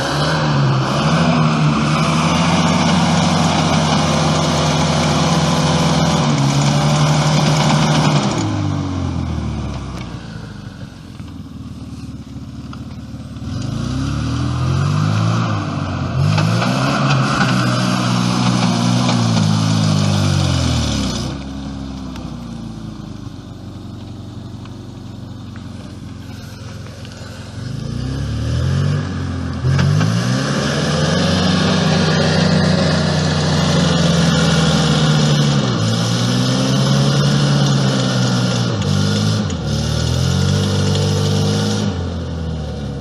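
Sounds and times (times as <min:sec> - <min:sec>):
car engine revving: 0:00.0 - 0:43.0.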